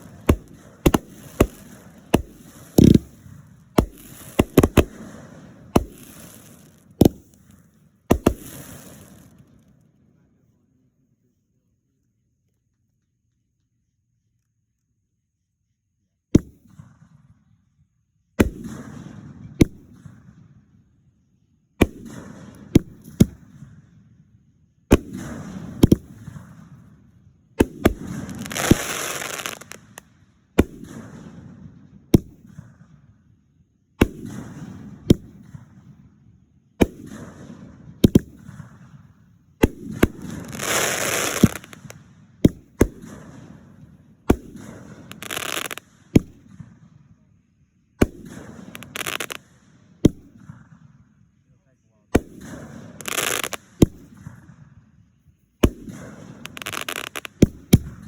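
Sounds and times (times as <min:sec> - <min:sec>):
fireworks crackling: 0:00.0 - 0:09.7, 0:27.6 - 0:30.1, 0:39.6 - 0:46.7, 0:48.0 - 0:50.4, 0:52.2 - 0:54.4, 0:55.6 - 0:58.0
fireworks bangs: 0:00.0 - 0:09.8, 0:24.9 - 0:32.9, 0:36.8 - 0:47.3, 0:48.0 - 0:50.9, 0:52.2 - 0:54.8, 0:55.6 - 0:58.0.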